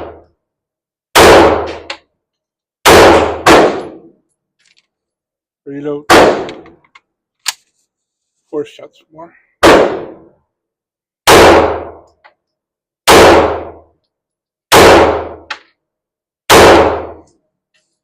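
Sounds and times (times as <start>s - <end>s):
pistol shots: 1.1s - 1.9s, 2.8s - 4.1s, 6.1s - 6.8s, 9.6s - 10.3s, 11.2s - 12.1s, 13.0s - 13.8s, 14.7s - 15.6s, 16.5s - 17.3s.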